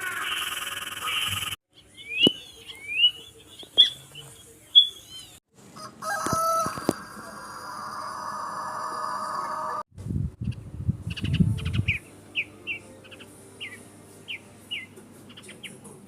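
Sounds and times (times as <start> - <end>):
bird calling sharp rising calls: 0.0 - 4.0.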